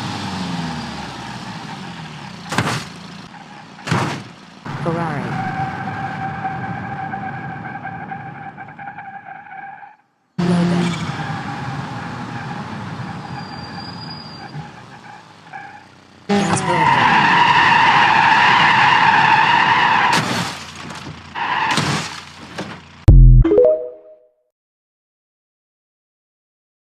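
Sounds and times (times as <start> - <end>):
tyres skidding: 0.0 - 23.1
long squealing skid: 5.3 - 20.2.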